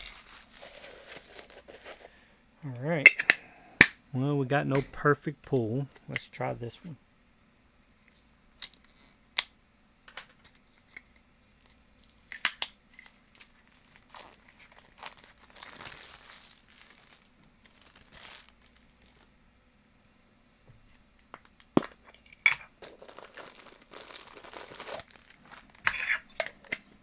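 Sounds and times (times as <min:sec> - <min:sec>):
plastic packaging crinkling: 0:00.0 - 0:02.2, 0:12.0 - 0:19.3, 0:21.8 - 0:26.8.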